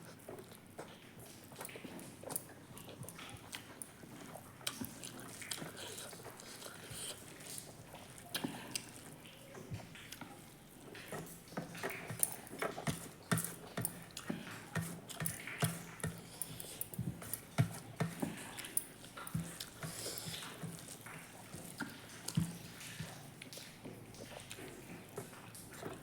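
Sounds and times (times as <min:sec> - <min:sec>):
wet chewing and mouth smacks: 0:00.0 - 0:26.0.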